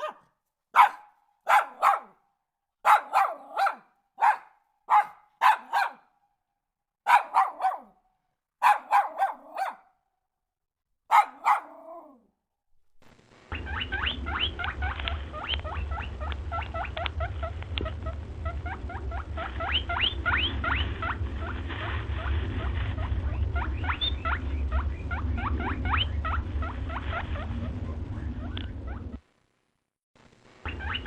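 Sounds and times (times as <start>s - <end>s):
low rumble: 13.1s - 29.2s
small animals squeaking: 13.5s - 29.2s.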